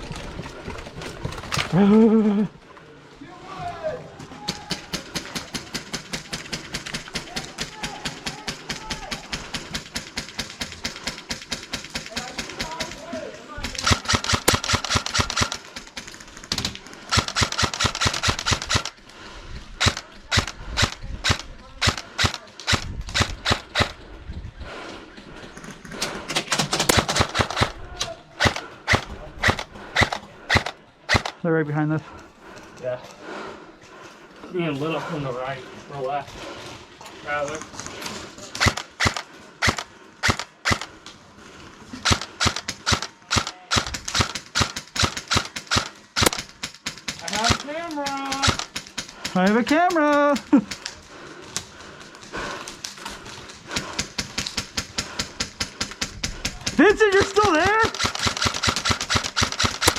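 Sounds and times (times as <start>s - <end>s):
airsoft guns firing: 4.4s - 19.0s, 19.8s - 24.0s, 26.3s - 31.4s, 38.6s - 41.0s, 41.9s - 51.1s, 53.6s - 59.9s
airsoft gun firing single shots: 13.8s - 15.6s, 42.0s - 47.6s, 57.3s - 59.9s.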